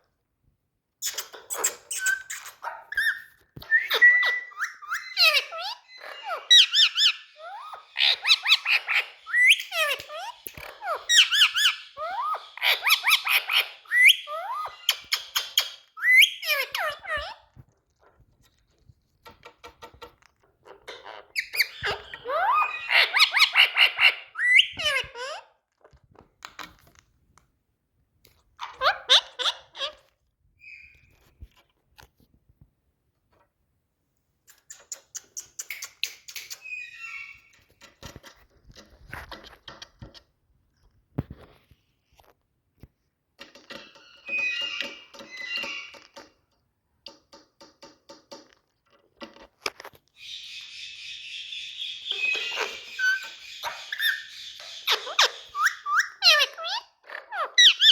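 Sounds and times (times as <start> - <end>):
parrot whistling and chattering: 1.0 - 17.4, 50.2 - 57.9.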